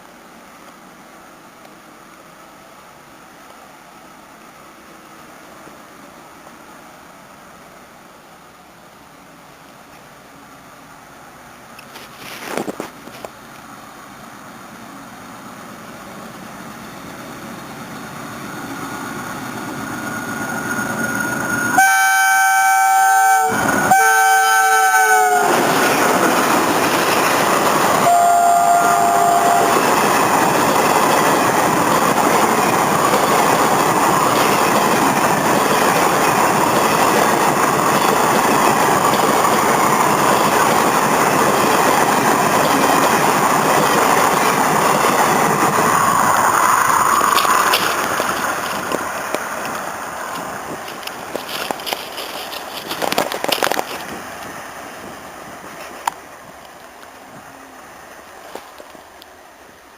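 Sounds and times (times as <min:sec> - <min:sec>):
diesel locomotive engine: 0:00.0 - 0:59.9
locomotive chord horn blasts: 0:21.8 - 0:25.6, 0:28.0 - 0:29.8
train clattering on rails: 0:22.9 - 0:57.5, 0:58.3 - 0:59.4.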